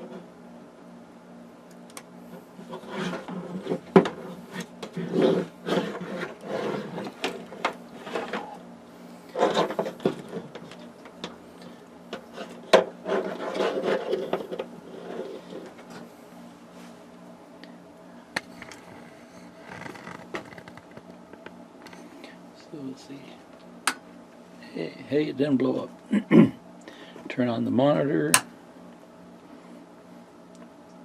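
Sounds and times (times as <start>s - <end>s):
hands rubbing and scraping wires: 1.7s - 17.1s, 18.4s - 22.1s.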